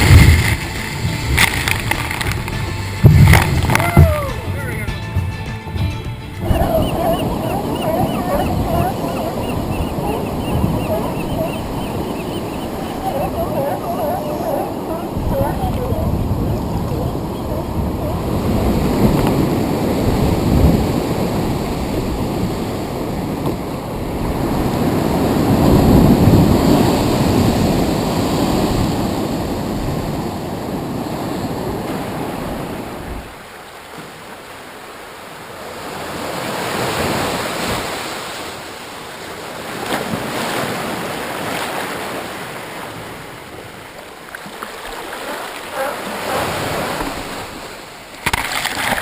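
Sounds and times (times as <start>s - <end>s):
waves washing in and out: 0.0s - 4.9s, 6.3s - 49.0s
wind buffeting microphone: 6.4s - 33.2s.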